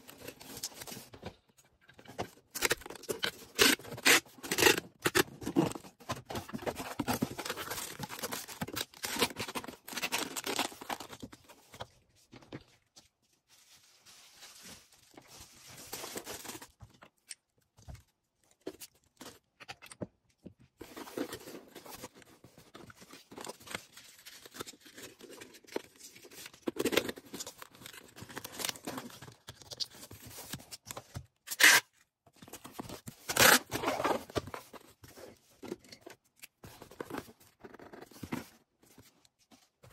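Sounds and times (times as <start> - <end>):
packaging rustling and tearing: 2.2 - 11.9, 13.6 - 16.8, 20.8 - 35.4.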